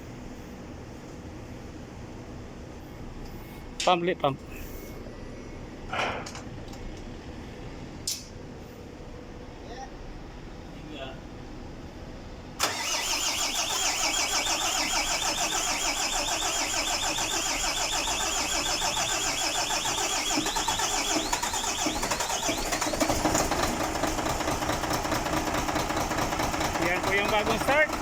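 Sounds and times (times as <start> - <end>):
diesel engine starting and running: 12.6 - 28.0.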